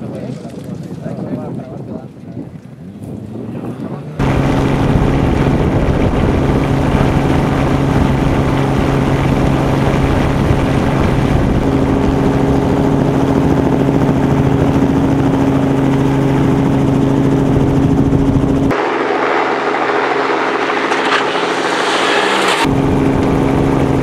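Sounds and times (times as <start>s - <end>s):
engine running steadily: 3.1s - 24.0s.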